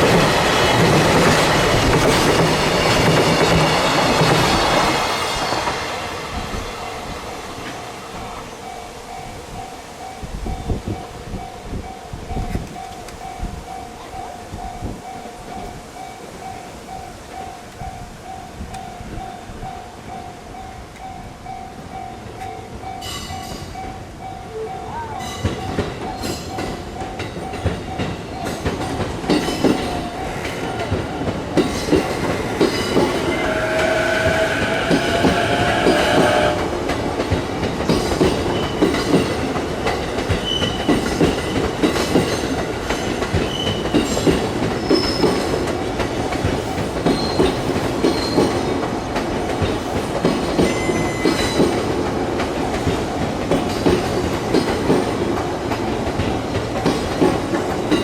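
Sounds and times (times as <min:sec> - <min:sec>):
train wheels clattering: 0:00.0 - 0:08.4, 0:25.3 - 0:58.0
high wheel squeal: 0:32.8 - 0:36.8.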